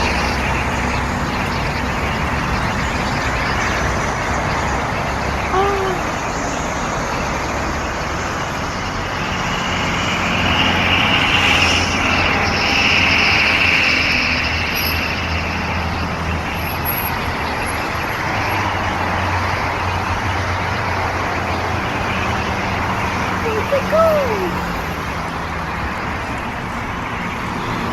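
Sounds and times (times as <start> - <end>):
road traffic noise: 0.0 - 27.9
vehicle passing: 21.6 - 25.9.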